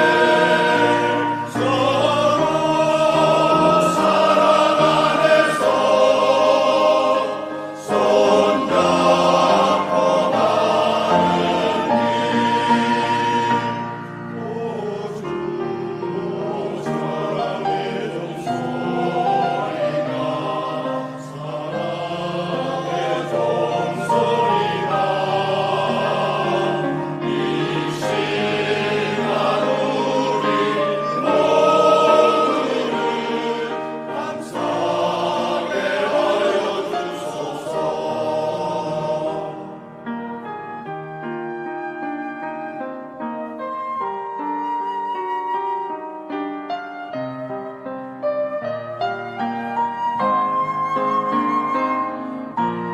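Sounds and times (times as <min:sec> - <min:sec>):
choir singing in parts: 0:00.0 - 0:41.6
piano accompaniment: 0:00.0 - 0:52.9.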